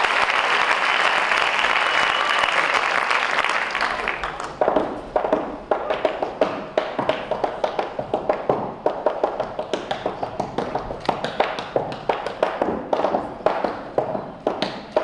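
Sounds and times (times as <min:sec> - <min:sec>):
tap shoes striking floor: 0:04.4 - 0:15.0.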